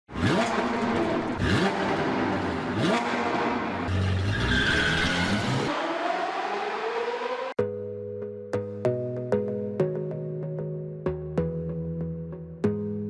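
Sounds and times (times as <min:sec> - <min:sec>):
car engine revving: 0:00.1 - 0:07.6.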